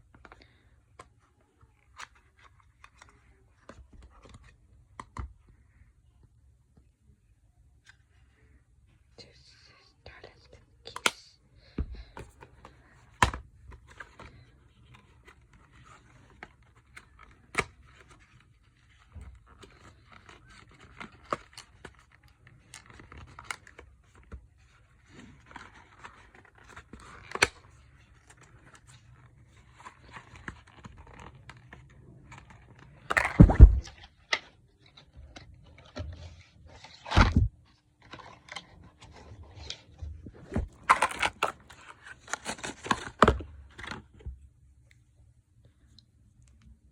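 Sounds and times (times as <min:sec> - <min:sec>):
packaging scraping and crinkling: 0:24.9 - 0:44.1.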